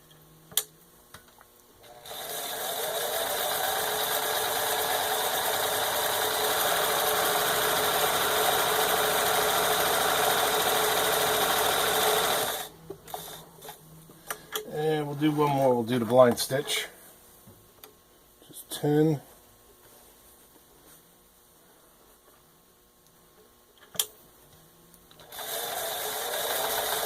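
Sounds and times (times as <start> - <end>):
sewing machine running: 1.8 - 13.4, 25.2 - 27.0.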